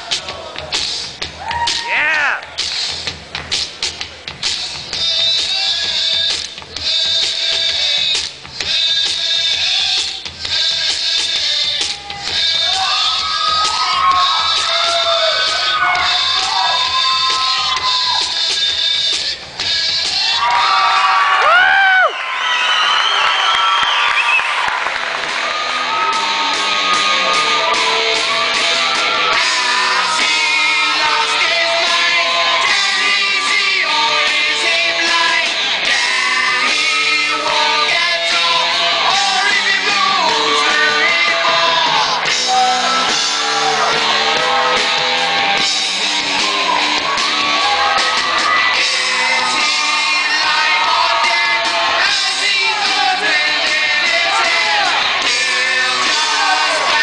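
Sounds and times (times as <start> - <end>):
pop song with vocals: 4.3 - 57.0
audience shouting: 11.9 - 18.4, 20.0 - 33.6, 39.0 - 57.0.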